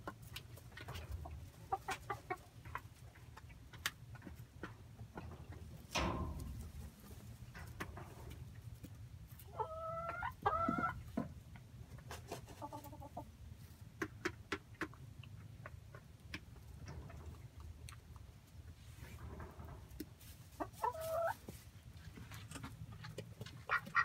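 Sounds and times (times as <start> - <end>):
chickens calling: 0.0 - 11.2, 11.9 - 13.4, 20.0 - 24.0.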